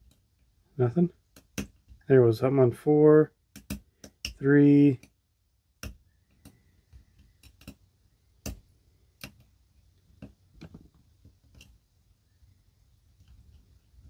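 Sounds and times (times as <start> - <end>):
lock pick clicking on pins: 3.5 - 4.4, 5.0 - 9.6.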